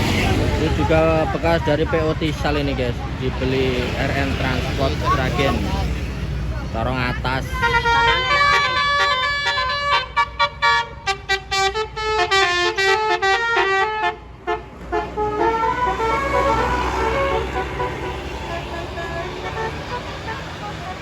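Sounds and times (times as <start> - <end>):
bus engine running: 0.0 - 21.0
multi-tone bus horn playing a tune: 7.4 - 21.0.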